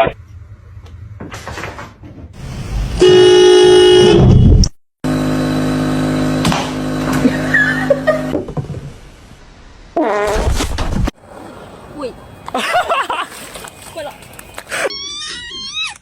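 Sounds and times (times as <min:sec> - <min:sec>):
horn blasts: 0:02.9 - 0:07.8.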